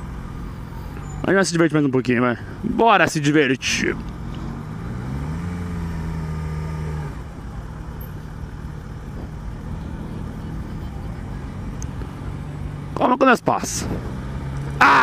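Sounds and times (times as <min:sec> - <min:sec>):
motorcycle engine revving: 0:03.5 - 0:15.0.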